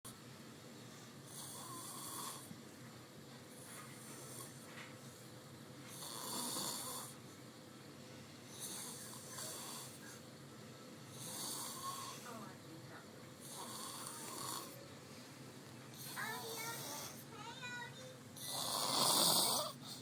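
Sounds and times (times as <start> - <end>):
woman snoring: 1.3 - 2.4, 6.0 - 7.2, 8.6 - 10.0, 11.2 - 12.3, 13.4 - 14.7, 18.4 - 20.0.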